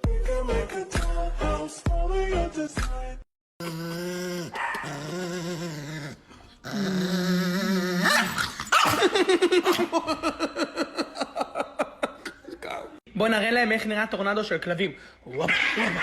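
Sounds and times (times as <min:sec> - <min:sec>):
dog whining: 0:03.6 - 0:09.0
dog yipping: 0:04.5 - 0:05.2, 0:08.0 - 0:09.0.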